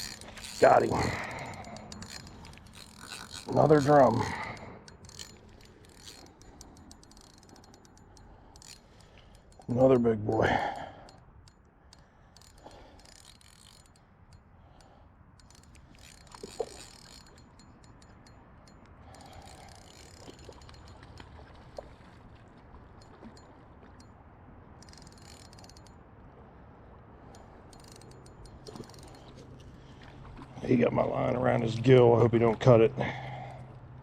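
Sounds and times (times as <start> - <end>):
fishing reel clicking and whirring: 0.0 - 21.3, 24.8 - 26.0, 27.3 - 29.4.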